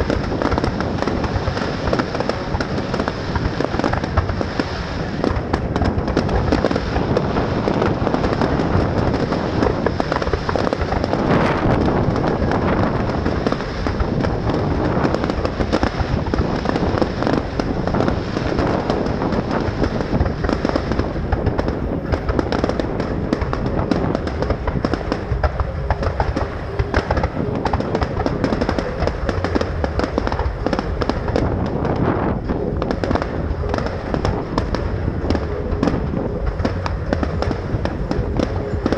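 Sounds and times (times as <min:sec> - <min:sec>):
fireworks bangs and crackling: 0:00.0 - 0:38.9.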